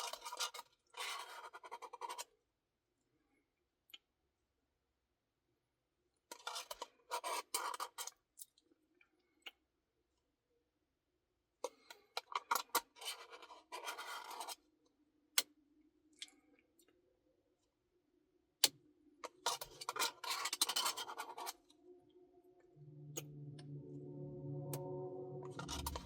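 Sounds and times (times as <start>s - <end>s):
soft tune: 21.0s - 26.0s.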